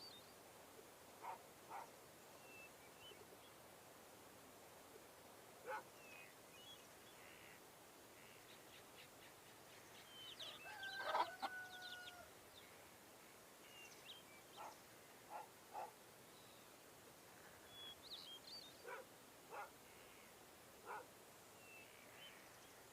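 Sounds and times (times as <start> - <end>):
birds chirping: 8.2 - 12.9, 13.6 - 16.7, 17.4 - 21.1.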